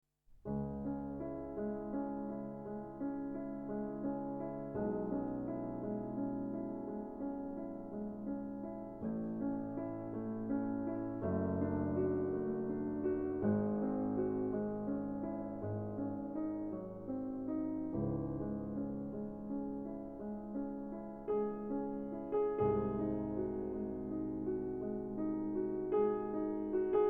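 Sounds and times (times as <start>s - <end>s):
piano chords: 0.5s - 27.0s.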